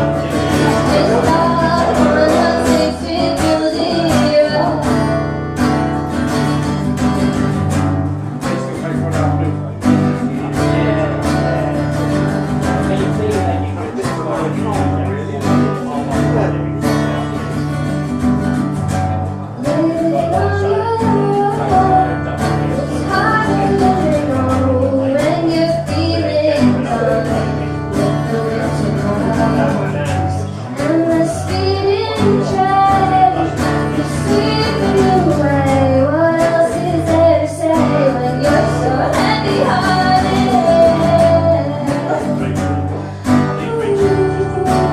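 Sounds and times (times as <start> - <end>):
person singing: 0.0 - 5.6, 19.4 - 44.9
guitar accompaniment: 0.0 - 44.9.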